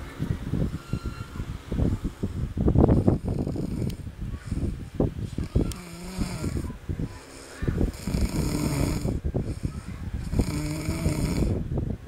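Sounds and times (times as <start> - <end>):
baby snoring: 2.9 - 4.1, 5.4 - 11.6.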